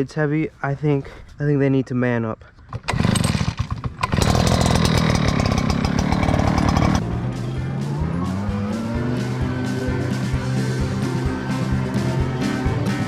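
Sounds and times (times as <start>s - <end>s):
leaf blower engine running loud: 2.9s - 7.0s
background music: 6.3s - 13.0s.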